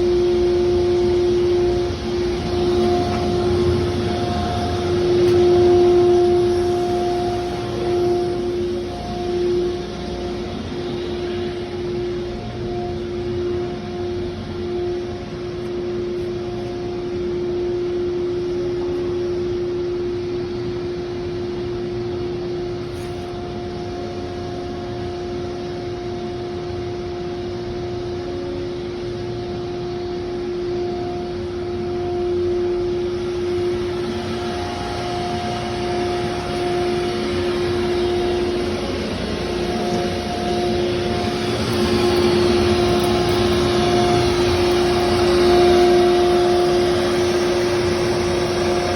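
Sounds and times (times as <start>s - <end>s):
cnc router spindle hum: 0.0s - 48.9s
router cutting wood: 33.5s - 48.9s.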